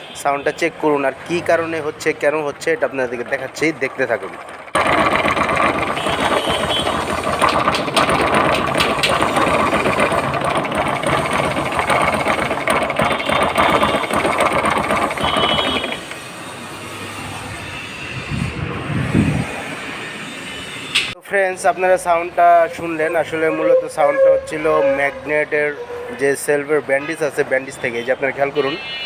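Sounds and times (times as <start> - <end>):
harsh mechanical clatter and grinding: 1.0 - 19.6
motorcycle engine running: 1.3 - 16.4.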